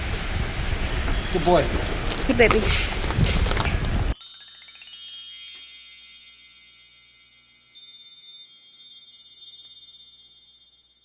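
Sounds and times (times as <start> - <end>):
wind chimes tinkling: 4.0 - 11.0.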